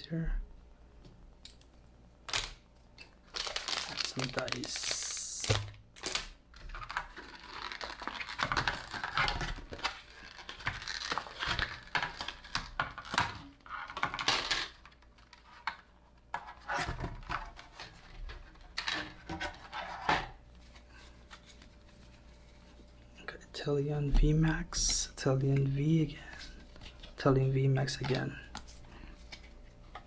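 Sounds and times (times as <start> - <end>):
packaging rustling and crinkling: 2.3 - 15.9.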